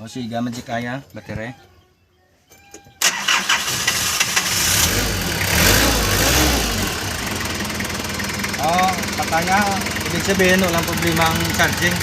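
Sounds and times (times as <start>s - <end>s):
engine starting and idling: 3.0s - 12.0s.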